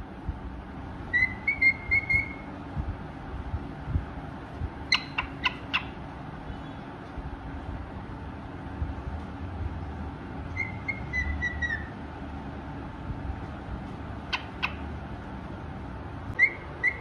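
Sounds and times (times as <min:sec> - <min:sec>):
cockatiel chirping: 0:01.1 - 0:02.5, 0:04.9 - 0:06.0, 0:10.5 - 0:11.9, 0:14.3 - 0:14.9, 0:16.4 - 0:17.0
cockatiel whistling: 0:01.1 - 0:02.5, 0:04.9 - 0:05.9, 0:10.5 - 0:11.9, 0:14.3 - 0:14.8, 0:16.4 - 0:17.0.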